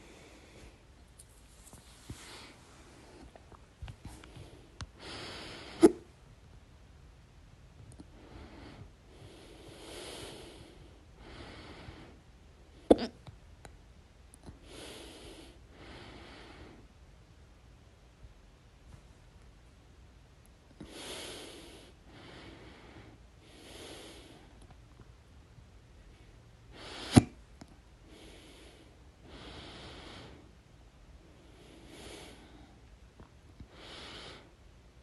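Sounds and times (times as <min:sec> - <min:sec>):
person breathing: 0:00.0 - 0:01.0, 0:01.6 - 0:06.0, 0:08.1 - 0:12.2, 0:14.6 - 0:16.9, 0:20.8 - 0:24.6, 0:28.0 - 0:30.6, 0:31.2 - 0:32.9, 0:33.6 - 0:34.6.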